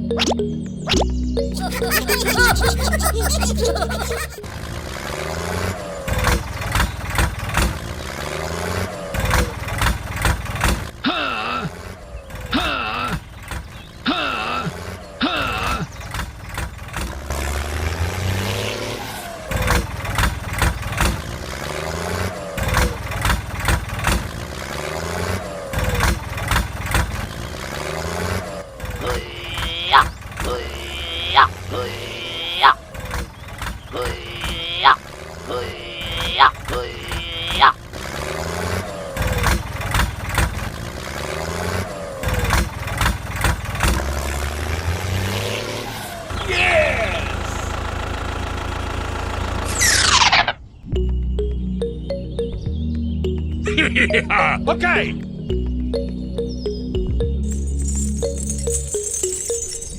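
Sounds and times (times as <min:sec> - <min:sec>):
vehicle engine revving: 0:04.5 - 0:11.0, 0:16.0 - 0:29.0, 0:37.8 - 0:50.1
engine running low: 0:37.8 - 0:50.3.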